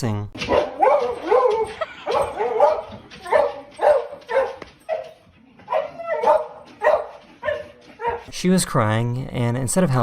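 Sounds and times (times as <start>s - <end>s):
dog barking and yipping: 0.4s - 8.3s.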